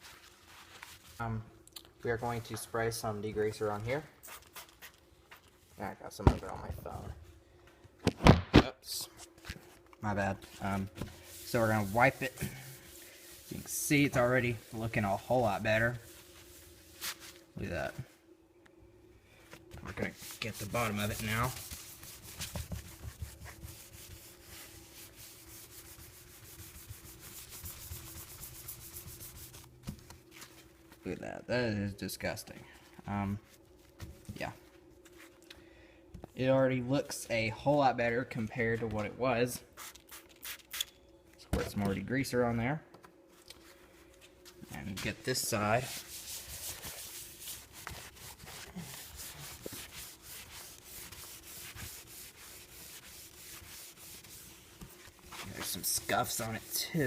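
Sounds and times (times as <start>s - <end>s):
paper towel scrubbing laptop case: 10.4s - 17.6s, 19.9s - 31.1s, 44.9s - 57.0s.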